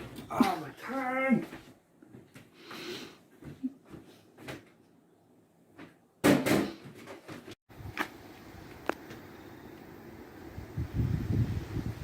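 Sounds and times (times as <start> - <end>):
steady outdoor hiss: 7.7 - 12.0.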